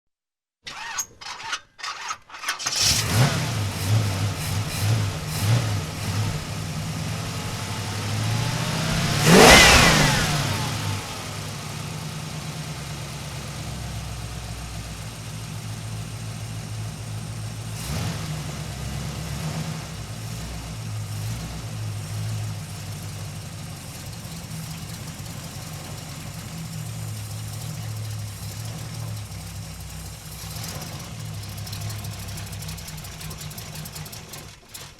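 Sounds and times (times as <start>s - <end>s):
starter motor cranking: 0.7s - 3.2s
car engine revving and idling: 2.7s - 34.9s.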